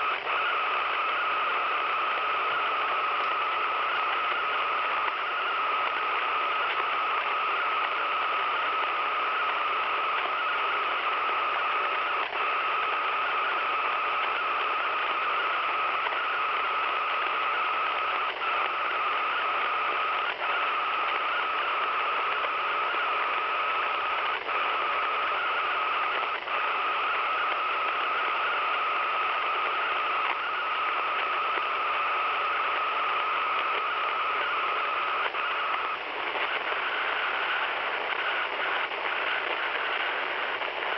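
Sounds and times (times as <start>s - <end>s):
radio static hiss: 0.0s - 40.9s
whine in static: 0.0s - 40.9s.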